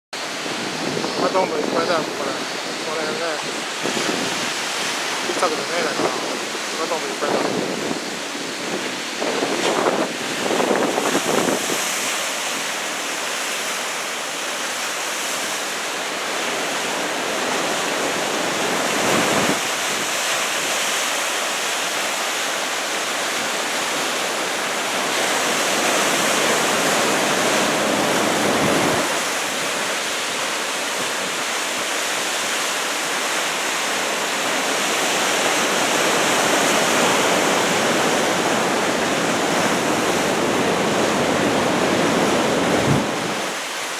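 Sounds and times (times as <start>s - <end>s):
waves breaking: 0.2s - 43.9s.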